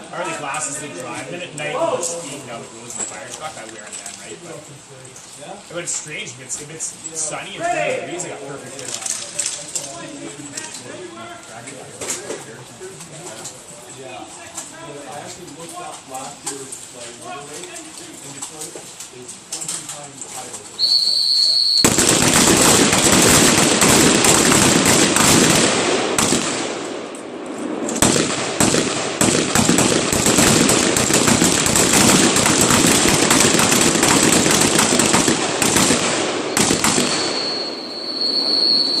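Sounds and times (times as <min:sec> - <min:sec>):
rapid rifle gunfire: 0:21.8 - 0:26.9, 0:28.0 - 0:37.6.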